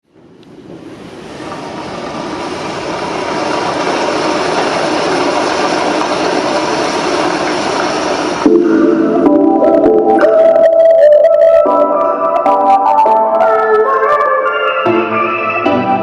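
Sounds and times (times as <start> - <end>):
pop song over speakers: 8.5 - 16.0.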